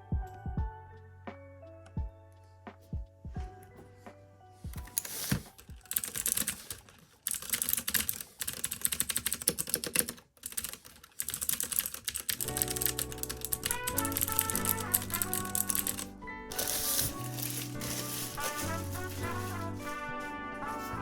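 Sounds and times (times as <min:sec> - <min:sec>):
fast clicky keyboard typing: 0:04.8 - 0:17.6.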